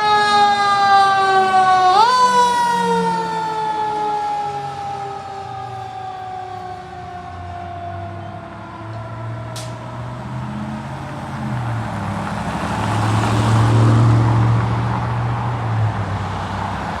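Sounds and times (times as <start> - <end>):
fire truck siren winding down: 0.0 - 13.5.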